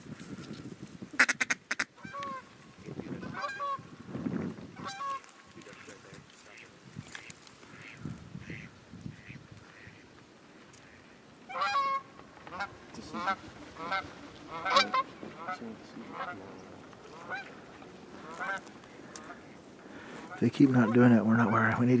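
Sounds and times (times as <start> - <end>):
honking waterfowl calls: 1.2 - 3.9, 4.7 - 10.2, 10.8 - 22.0.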